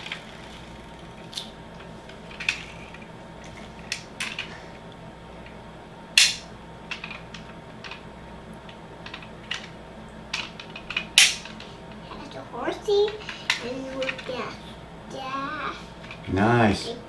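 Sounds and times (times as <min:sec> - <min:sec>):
toy car clicks and clinks: 0:13.0 - 0:14.4.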